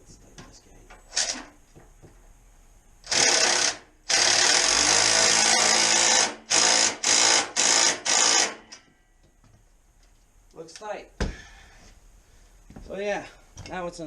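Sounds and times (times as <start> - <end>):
impact wrench bursts: 3.0 - 8.8.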